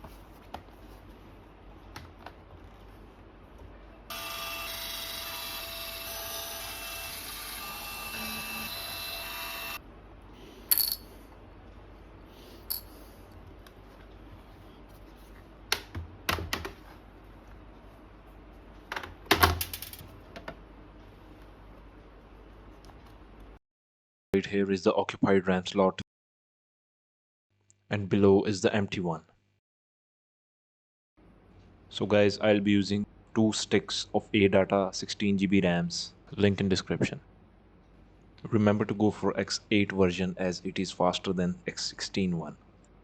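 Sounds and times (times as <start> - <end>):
small electric motor whirring: 4.1 - 9.8.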